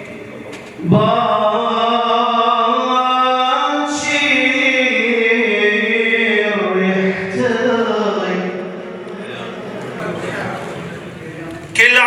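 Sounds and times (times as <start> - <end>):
man singing a religious chant: 0.0 - 8.9, 11.6 - 12.0.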